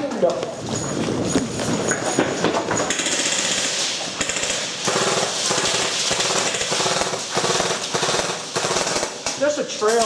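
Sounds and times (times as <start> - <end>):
airsoft guns firing full auto: 2.9 - 9.6.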